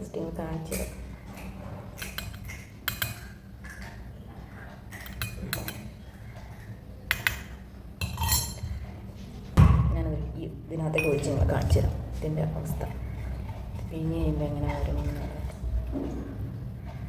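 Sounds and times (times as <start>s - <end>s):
dishes and utensils clinking: 0.6s - 4.1s, 4.7s - 8.9s.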